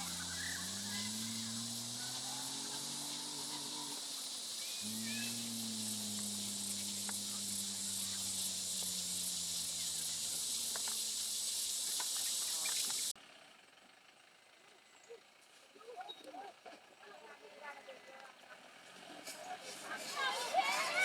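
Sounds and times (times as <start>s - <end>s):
low hum: 0.0s - 12.5s
faint clicks: 0.0s - 13.1s
insects chirping: 0.0s - 13.2s.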